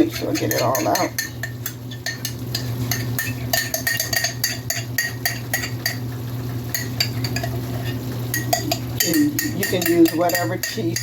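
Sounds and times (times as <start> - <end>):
metal spoon scraping glass jar: 0.0 - 1.5
steady low hum: 0.0 - 11.0.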